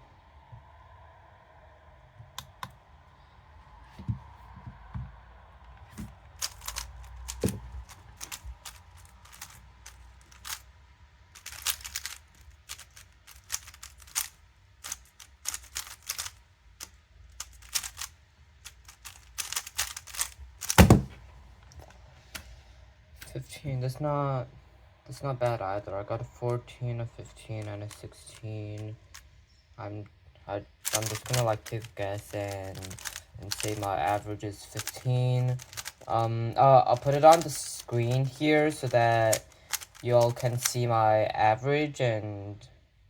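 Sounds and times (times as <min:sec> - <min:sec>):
speed cube plastic clicks: 0:02.4 - 0:02.7, 0:06.0 - 0:10.7, 0:11.4 - 0:21.2, 0:30.8 - 0:40.9
loud thump: 0:20.8 - 0:21.2.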